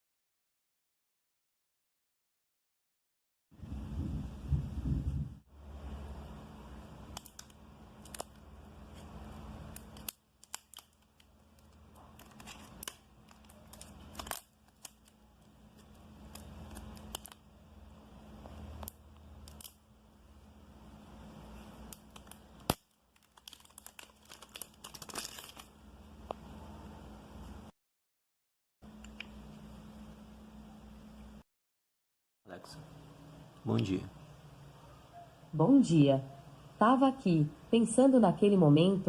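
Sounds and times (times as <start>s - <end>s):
packaging crinkling and tearing: 7.1s - 17.5s, 18.7s - 19.8s, 21.7s - 25.9s.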